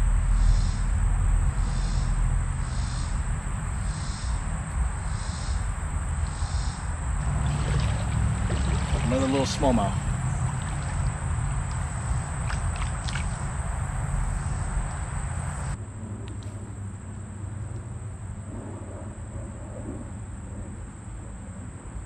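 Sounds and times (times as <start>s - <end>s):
high insect drone: 0.0s - 15.8s
running water: 3.0s - 15.8s.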